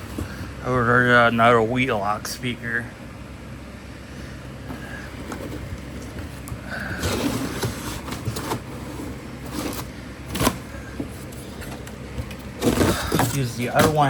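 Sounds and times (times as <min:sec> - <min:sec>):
packaging rustling: 0:05.1 - 0:14.0.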